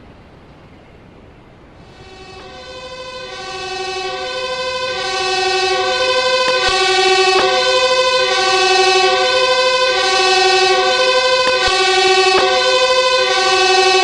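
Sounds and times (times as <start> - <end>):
fire engine siren wailing: 1.8 - 14.0.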